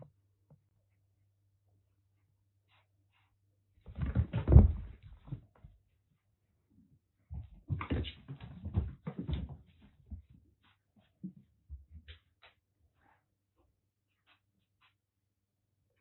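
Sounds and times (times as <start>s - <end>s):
kittens thumping and scuffling: 3.1s - 5.8s, 7.2s - 12.6s.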